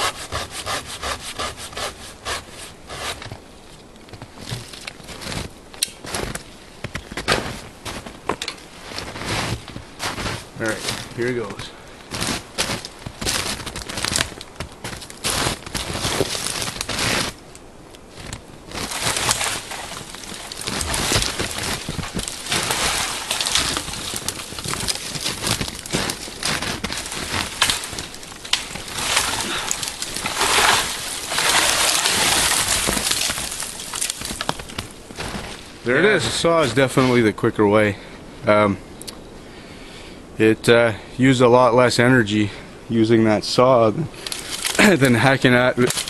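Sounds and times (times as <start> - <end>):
saw rasping through dry wood: 0.0 - 3.3.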